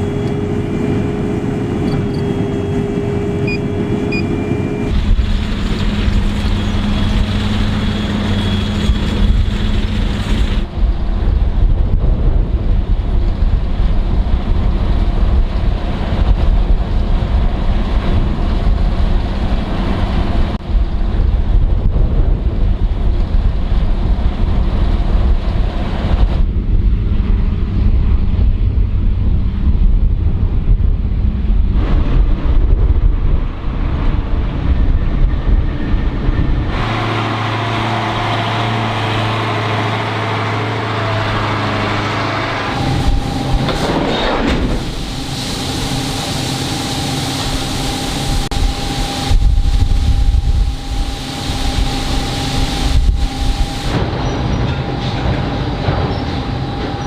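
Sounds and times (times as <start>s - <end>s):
heavy machinery humming: 0.0s - 57.0s.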